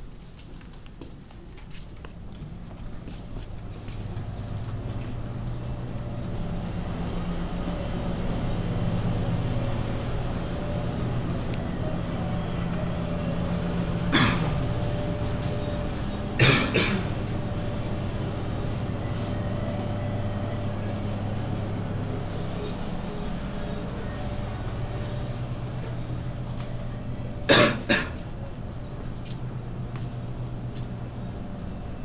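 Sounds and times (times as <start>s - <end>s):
steady low hum: 0.0s - 32.0s
person coughing: 14.1s - 14.6s, 16.4s - 17.2s, 27.5s - 28.2s.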